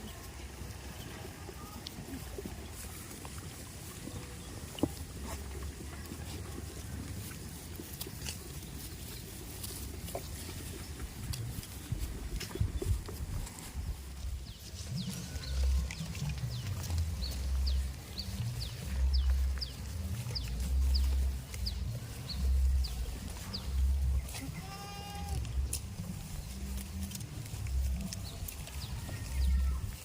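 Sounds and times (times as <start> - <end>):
low pulsing rumble: 10.9 - 24.5
goat bleating: 24.2 - 25.8, 28.6 - 30.0.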